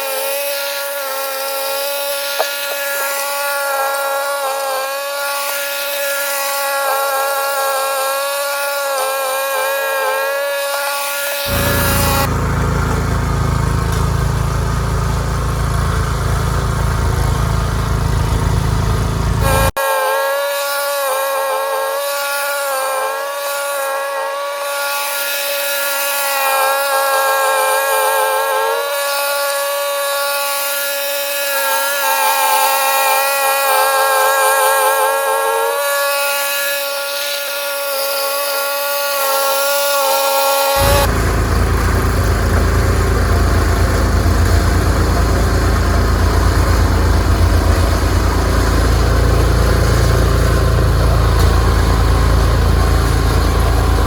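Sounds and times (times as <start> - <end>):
snowblower engine whining: 0.0 - 54.0
deeper rumble: 11.5 - 19.7, 40.8 - 54.0.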